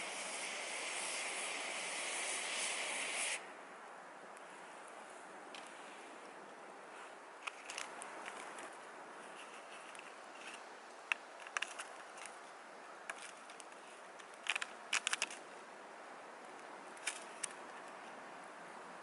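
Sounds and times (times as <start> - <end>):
fire hissing: 0.0 - 3.5.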